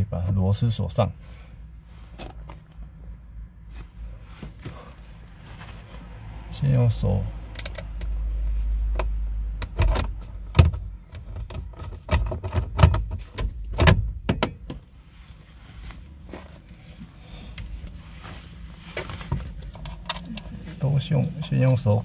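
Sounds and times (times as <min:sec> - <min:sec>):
quiet scuffing: 0:03.6 - 0:06.1, 0:15.0 - 0:19.6.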